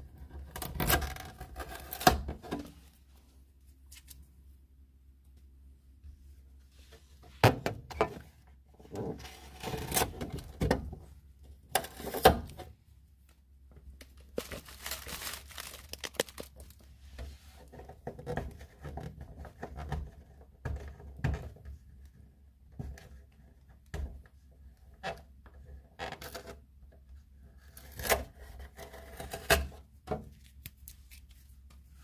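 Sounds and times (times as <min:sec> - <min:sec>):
film peeling and rustling: 0:14.1 - 0:16.9.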